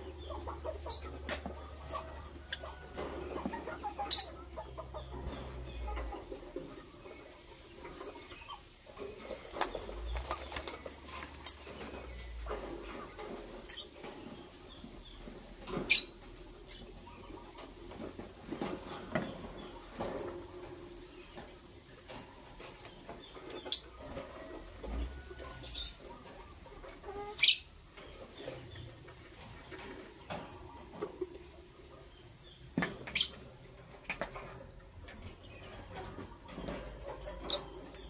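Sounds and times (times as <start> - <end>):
lovebirds chirping: 0.0 - 17.7, 18.8 - 38.0
birds scratching and rustling: 0.0 - 38.0.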